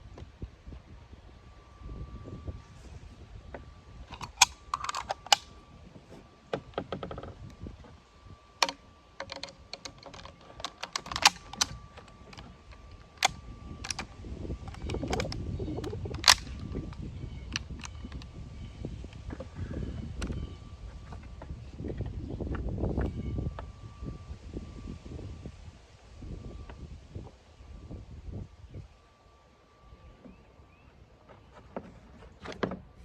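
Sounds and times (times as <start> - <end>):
low rumbling handling noise: 0.0 - 25.6, 29.8 - 33.0
rifle parts clicking and snapping: 4.1 - 5.5, 8.6 - 16.8.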